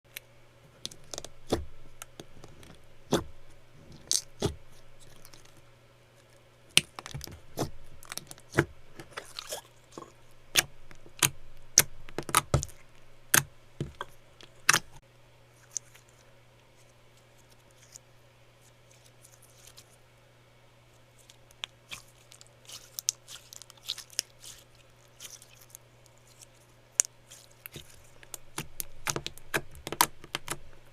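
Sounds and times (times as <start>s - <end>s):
slime popping and crackling: 21.9s - 30.7s.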